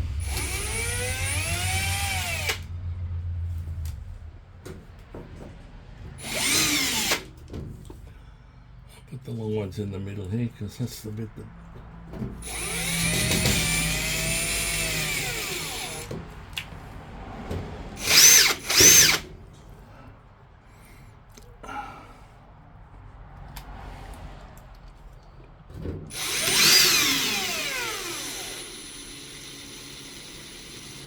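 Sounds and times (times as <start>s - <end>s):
power drill driving screws: 0.2s - 2.7s, 6.2s - 7.3s, 12.4s - 16.2s, 18.0s - 19.3s, 26.1s - 31.0s.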